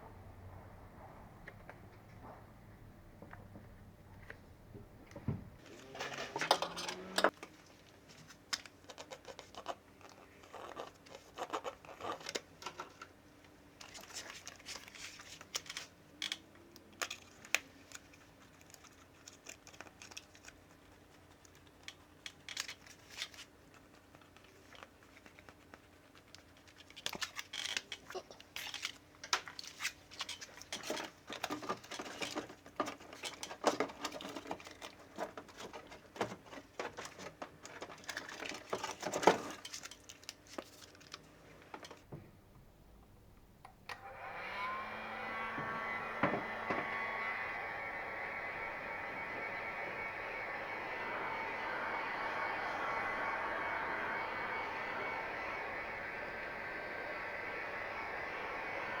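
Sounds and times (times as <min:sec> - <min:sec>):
faint steady hum: 0:40.1 - 0:59.0.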